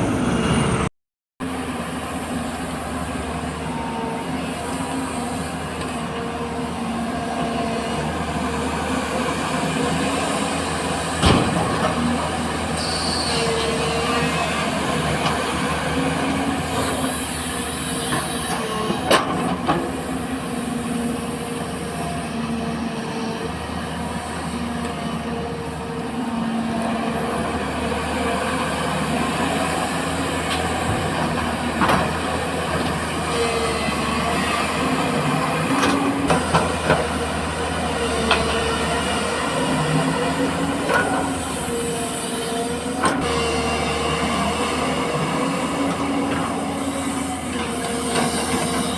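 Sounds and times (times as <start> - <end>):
diesel engine running under load: 0.0 - 48.9.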